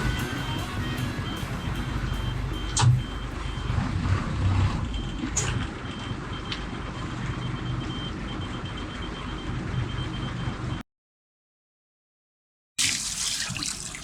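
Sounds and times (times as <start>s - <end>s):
high electronic beep: 0.0s - 3.8s
boat engine running: 0.0s - 7.2s.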